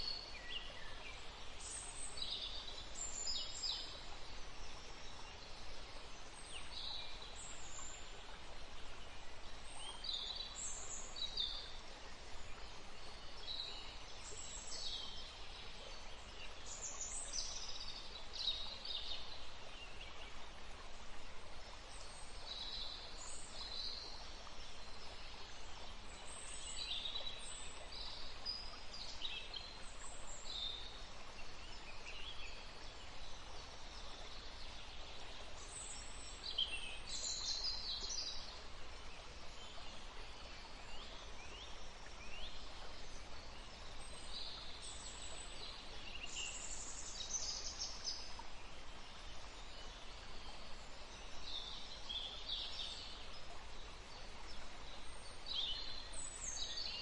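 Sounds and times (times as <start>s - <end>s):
songbirds chirping: 0.0s - 57.0s
stream running: 0.0s - 57.0s.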